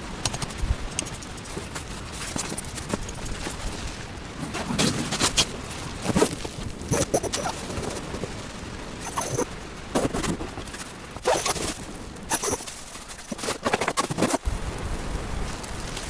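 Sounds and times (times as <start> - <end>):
rustling and crunching: 0.1 - 14.5.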